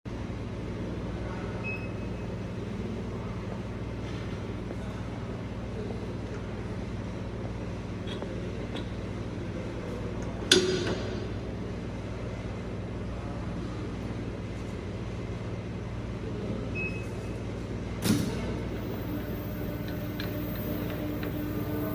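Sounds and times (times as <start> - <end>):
machine motor humming: 18.6 - 21.9.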